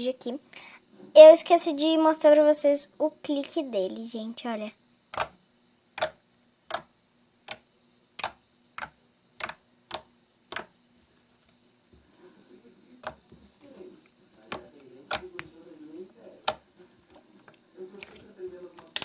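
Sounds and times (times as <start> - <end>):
slime clicking pops: 5.1 - 5.4, 6.0 - 7.6, 8.2 - 10.7, 13.0 - 13.2, 14.5 - 15.4.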